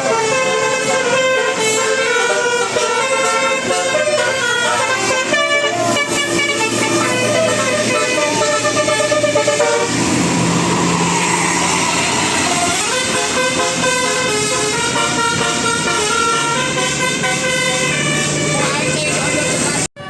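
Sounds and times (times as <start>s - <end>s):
melodic bus horn playing a tune: 0.0s - 19.9s
rush of noise: 9.7s - 14.0s.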